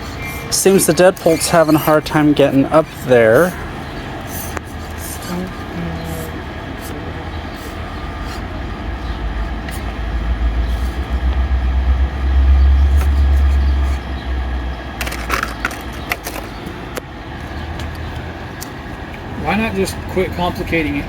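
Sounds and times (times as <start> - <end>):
loud low rumble: 5.3 - 16.1.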